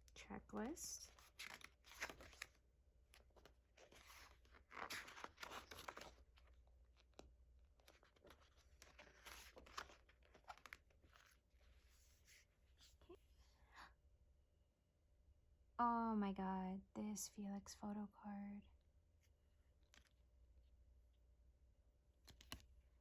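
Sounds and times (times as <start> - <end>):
paper and card rustling: 0.7 - 13.2, 22.2 - 22.7.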